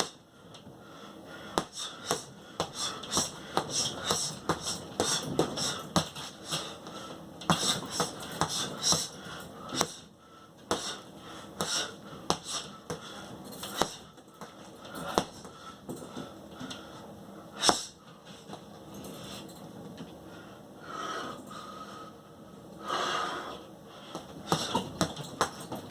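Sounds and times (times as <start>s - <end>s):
sharp hissing breaths: 0.9s - 14.1s, 17.0s - 18.0s
punches slapping: 1.5s - 6.2s, 7.5s - 10.0s, 11.6s - 13.0s, 13.7s - 14.1s, 15.1s - 15.5s, 24.2s - 25.9s.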